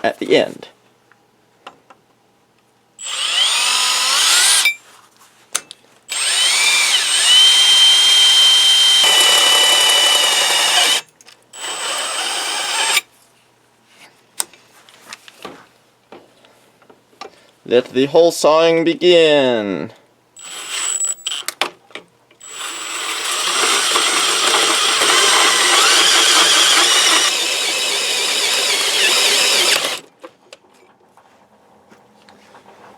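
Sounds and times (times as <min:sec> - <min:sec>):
cordless drill whining: 0:03.0 - 0:04.8, 0:06.1 - 0:13.0, 0:20.4 - 0:21.5, 0:22.4 - 0:30.1.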